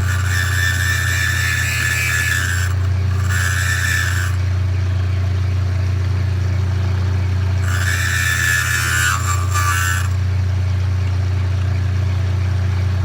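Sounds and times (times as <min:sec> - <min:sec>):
electric motor humming: 0:00.0 - 0:04.6, 0:07.4 - 0:10.4
grinding wheel hiss: 0:00.0 - 0:04.7, 0:07.4 - 0:10.5.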